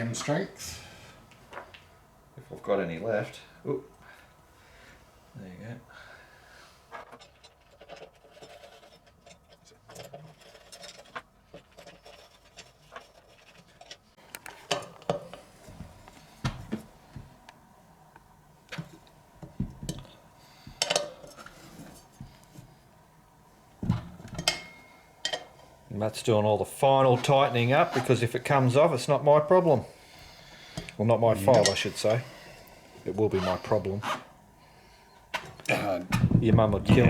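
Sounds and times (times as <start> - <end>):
sharp knocks: 36.1 - 37.0.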